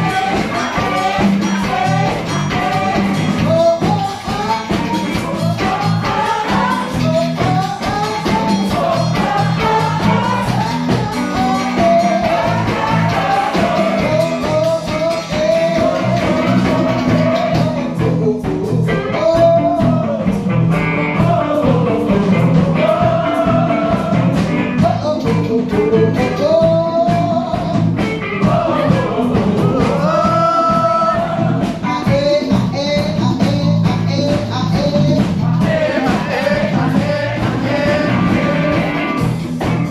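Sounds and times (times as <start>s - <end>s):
person singing: 0.0s - 20.4s, 28.5s - 39.3s
live rock band playing: 0.0s - 39.9s
steady drum beat: 0.0s - 39.9s.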